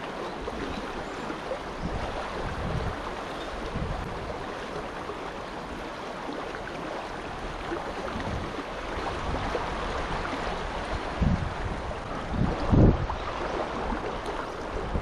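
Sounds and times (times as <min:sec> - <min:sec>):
wind buffeting microphone: 0:00.0 - 0:05.9, 0:07.2 - 0:15.0
river water flowing: 0:00.0 - 0:15.0.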